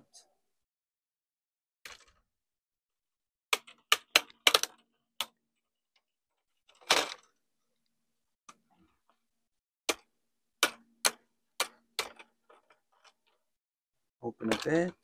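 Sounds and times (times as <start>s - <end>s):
plastic clips clicking and snapping: 3.6s - 5.4s, 14.4s - 15.0s.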